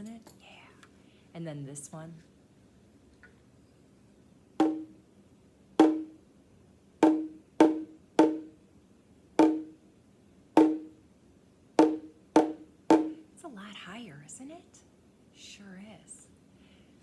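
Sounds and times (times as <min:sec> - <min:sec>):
deep drum: 0:04.6 - 0:05.0, 0:05.8 - 0:06.2, 0:07.0 - 0:08.5, 0:09.4 - 0:09.8, 0:10.6 - 0:10.9, 0:11.8 - 0:13.2
hand percussion knocks: 0:04.6 - 0:05.0, 0:05.8 - 0:06.2, 0:07.0 - 0:08.6, 0:09.4 - 0:09.8, 0:10.6 - 0:11.0, 0:11.8 - 0:13.2.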